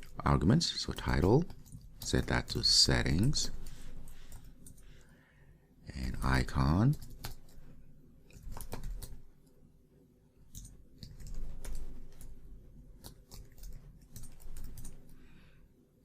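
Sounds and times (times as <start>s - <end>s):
computer keyboard keystrokes: 4.3s - 4.9s, 6.7s - 7.6s, 8.3s - 9.2s, 10.5s - 12.3s, 13.0s - 15.2s.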